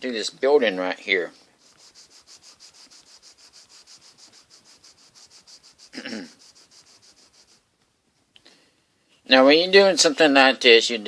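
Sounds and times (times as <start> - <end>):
pencil shading on paper: 0.7 - 7.7
person humming or grunting: 6.0 - 6.4.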